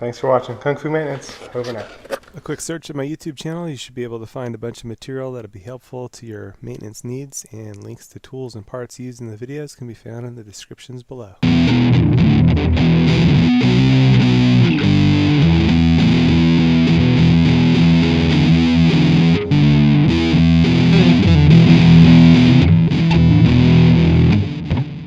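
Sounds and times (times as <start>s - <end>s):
distorted electric guitar rock riff: 11.4s - 25.0s.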